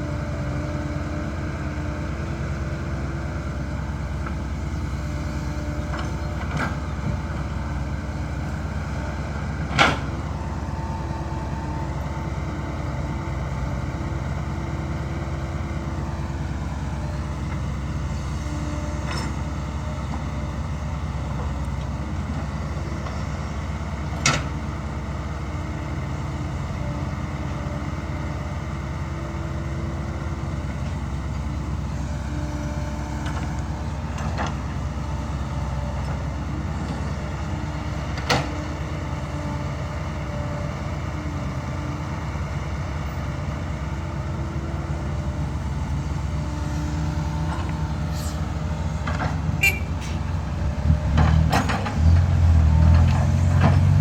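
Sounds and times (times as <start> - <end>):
diesel truck engine running: 0.0 - 54.0.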